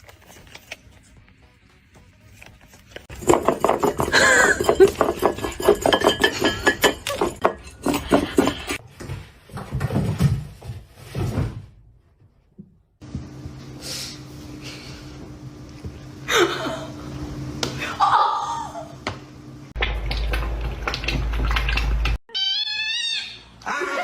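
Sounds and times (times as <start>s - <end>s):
hard objects clattering: 3.0s - 8.8s.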